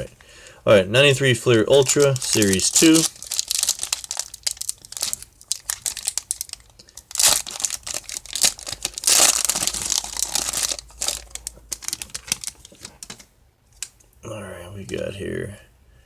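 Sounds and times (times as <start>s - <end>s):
wrapper ripping: 1.7s - 13.2s
wrapper crinkling: 1.7s - 13.9s.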